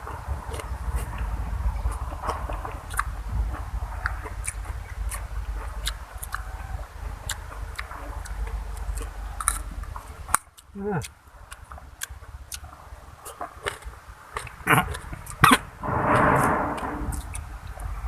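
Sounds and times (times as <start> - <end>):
person chewing food: 4.0 - 6.4, 7.3 - 15.4
mouth clicks: 7.2 - 15.6.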